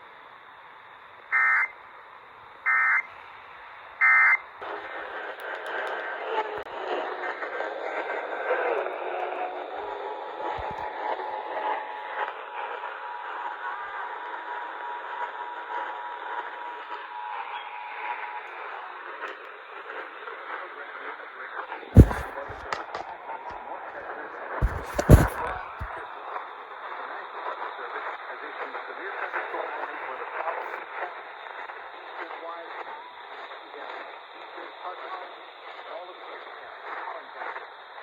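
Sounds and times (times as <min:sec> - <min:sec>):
radio hiss: 0:00.0 - 0:05.3, 0:22.0 - 0:23.0, 0:24.6 - 0:26.0, 0:31.9 - 0:38.0
radio hiss and static: 0:01.2 - 0:01.8, 0:22.0 - 0:23.0, 0:24.6 - 0:26.0.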